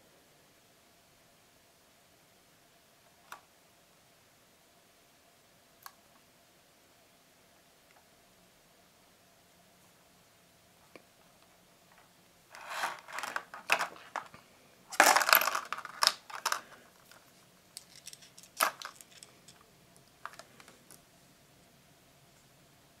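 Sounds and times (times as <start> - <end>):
earphones being handled: 11.9 - 21.0.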